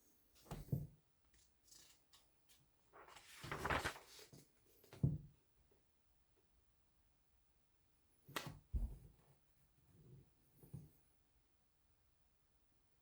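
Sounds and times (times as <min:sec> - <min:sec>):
rustling: 0:03.0 - 0:04.2.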